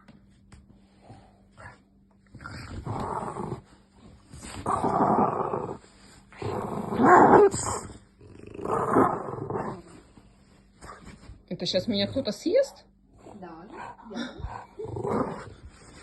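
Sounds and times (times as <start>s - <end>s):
dog growling: 1.5s - 3.8s, 4.4s - 10.1s, 13.1s - 16.0s.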